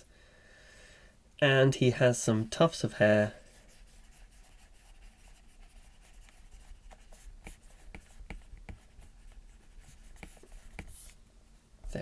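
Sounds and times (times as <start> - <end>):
stylus scratching on glass screen: 3.5 - 11.2.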